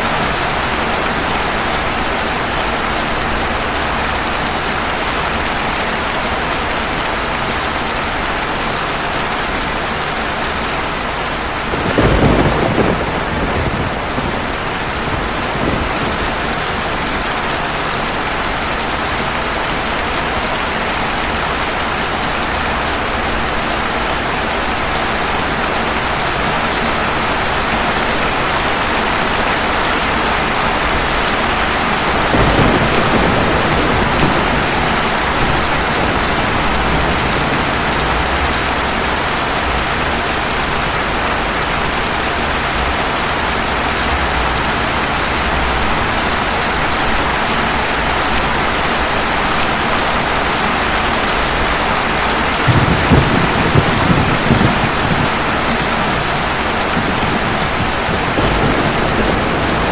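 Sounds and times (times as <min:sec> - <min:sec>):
heavy rain on pavement: 0:00.0 - 0:59.9
thunder rumbling: 0:11.0 - 0:17.7, 0:29.6 - 0:48.7, 0:50.8 - 0:59.9.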